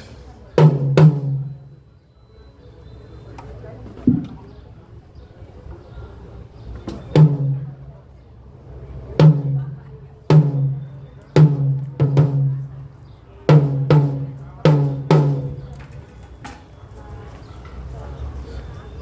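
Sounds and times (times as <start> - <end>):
tom drum hits: 0.6 - 1.7, 7.2 - 7.8, 9.2 - 12.7, 13.5 - 15.7.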